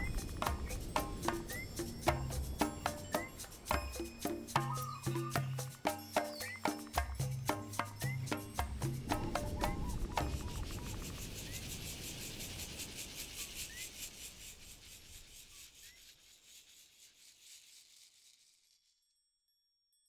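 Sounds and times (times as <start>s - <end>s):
rhythmic rasping: 0.0s - 10.7s.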